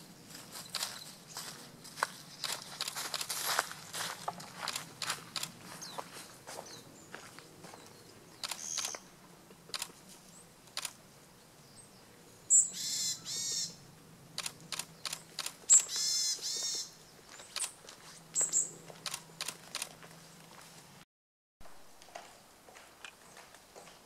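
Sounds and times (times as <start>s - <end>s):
short sharp bird ticks: 8.4s - 9.0s, 14.4s - 16.9s
bird buzzy call notes: 12.5s - 13.8s, 15.7s - 17.0s.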